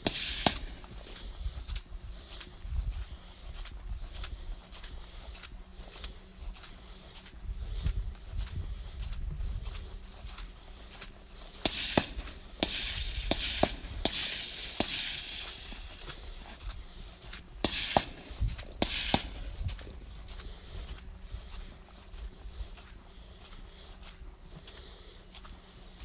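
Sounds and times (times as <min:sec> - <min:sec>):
gunshots at steel targets: 0:00.0 - 0:00.9, 0:11.6 - 0:16.2, 0:17.6 - 0:19.8.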